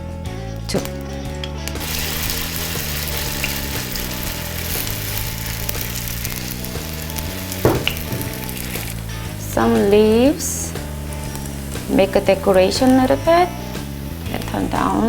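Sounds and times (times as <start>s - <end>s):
batter sizzling in hot oil: 0.9s - 15.0s
light knocks: 7.6s - 8.6s.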